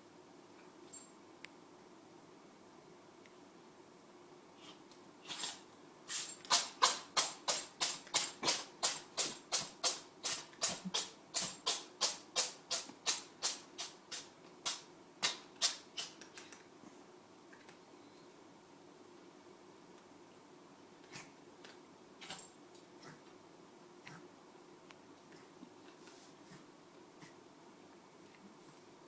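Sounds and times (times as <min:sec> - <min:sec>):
cat sneezing: 0:04.6 - 0:07.0.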